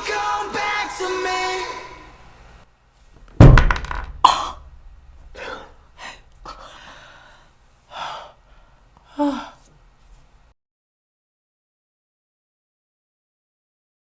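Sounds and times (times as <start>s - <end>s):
person gasping and breathing out: 4.2s - 9.6s.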